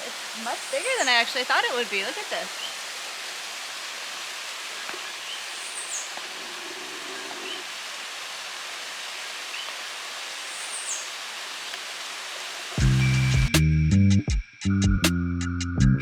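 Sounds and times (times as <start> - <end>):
bird chirping: 0.0 - 2.8, 4.8 - 7.7, 10.4 - 11.2
waterfall rushing: 0.0 - 13.5.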